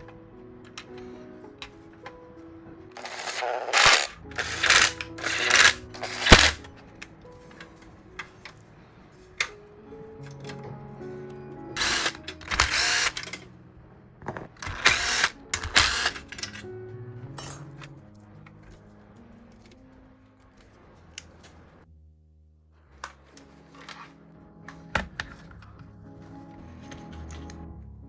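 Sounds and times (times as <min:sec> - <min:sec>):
background music: 0:00.0 - 0:28.0
electric screwdriver running: 0:03.0 - 0:06.7, 0:11.8 - 0:13.4, 0:14.6 - 0:16.6.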